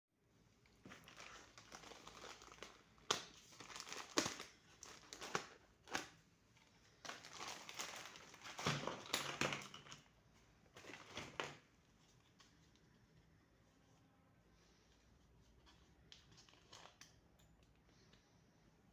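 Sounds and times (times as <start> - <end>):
packaging crinkling and rustling: 0.7 - 12.6.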